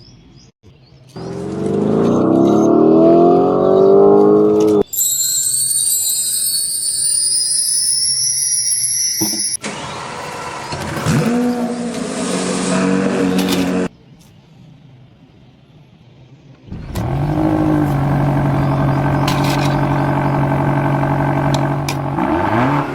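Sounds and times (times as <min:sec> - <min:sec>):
car engine revving: 0:01.2 - 0:04.8, 0:16.7 - 0:22.9
high rising whine: 0:04.8 - 0:09.6.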